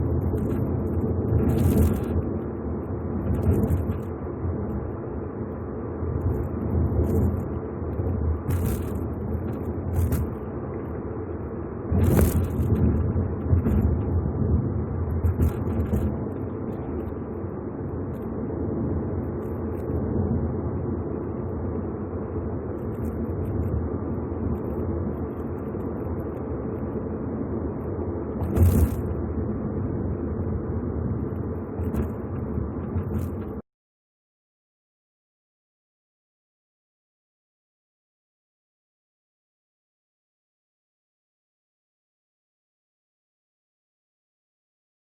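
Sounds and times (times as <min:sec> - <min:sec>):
road and tyre noise: 0:00.0 - 0:33.6.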